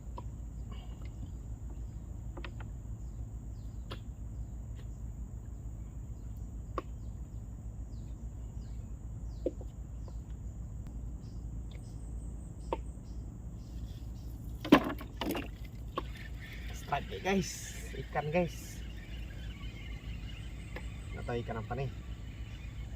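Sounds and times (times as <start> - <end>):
high-pitched insect drone: 15.3 - 22.9.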